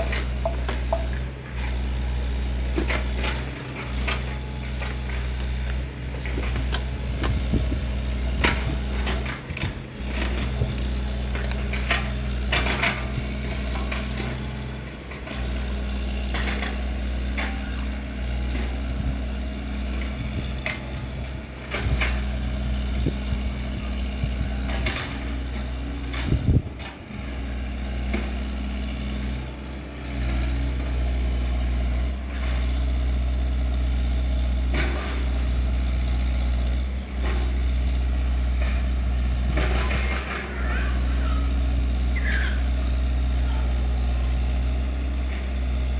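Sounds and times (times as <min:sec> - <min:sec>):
short clanks and knocks: 0:00.0 - 0:01.8
excavator diesel engine running: 0:00.0 - 0:45.9.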